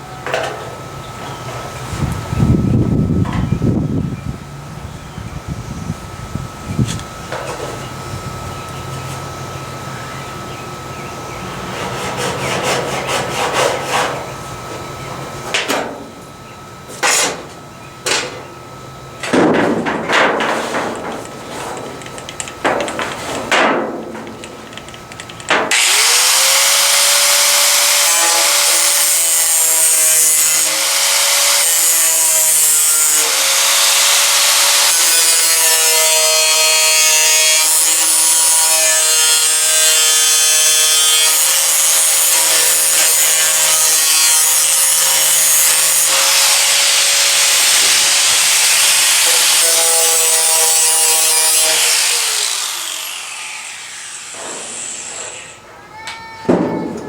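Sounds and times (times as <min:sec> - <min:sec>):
power tool grinding metal: 0:11.4 - 0:14.4, 0:25.6 - 0:55.8
scraping on sheet metal: 0:11.5 - 0:16.0, 0:19.3 - 0:24.6, 0:54.3 - 0:55.8.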